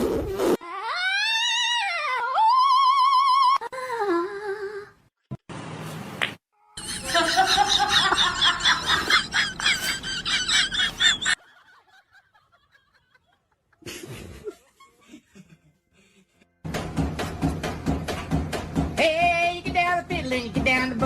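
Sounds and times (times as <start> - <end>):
high-pitched laughter: 6.8 - 16.5.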